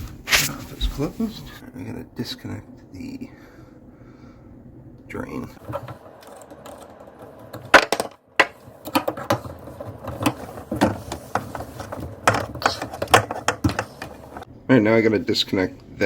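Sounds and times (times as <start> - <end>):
hand tools clicking and knocking: 5.6 - 14.5.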